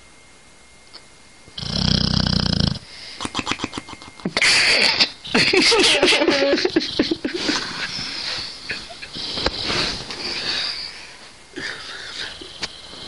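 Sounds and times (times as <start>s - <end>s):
dog snoring: 1.6s - 2.9s, 6.6s - 10.9s
dog noisy breaths: 7.3s - 11.3s.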